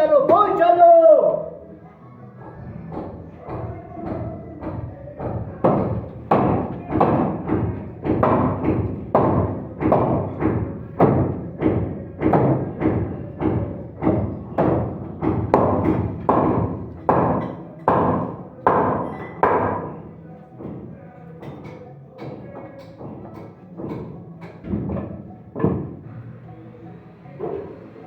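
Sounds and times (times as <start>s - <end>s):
hammer blows on wood: 2.5s - 20.0s.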